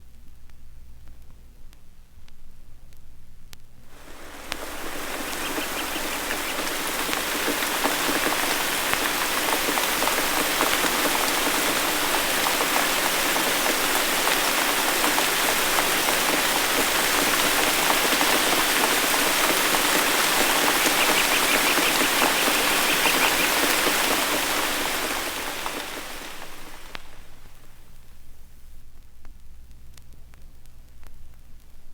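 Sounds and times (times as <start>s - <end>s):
faint low hum: 0.0s - 9.1s
rain pattering in woodland: 0.3s - 31.9s.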